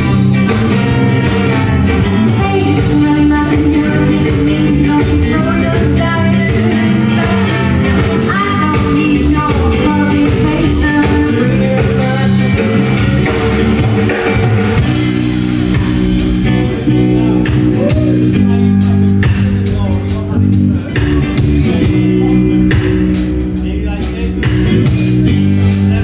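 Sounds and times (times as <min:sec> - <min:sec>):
bass guitar: 0:00.0 - 0:26.0
drum kit: 0:00.0 - 0:26.0
electric guitar: 0:00.0 - 0:26.0
person singing: 0:02.0 - 0:13.9, 0:15.3 - 0:19.9.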